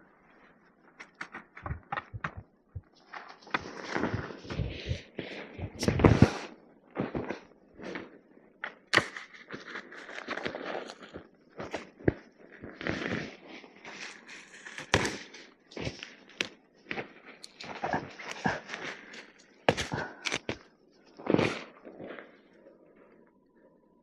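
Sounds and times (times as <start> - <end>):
sharp knocks and clicks: 1.0 - 2.9.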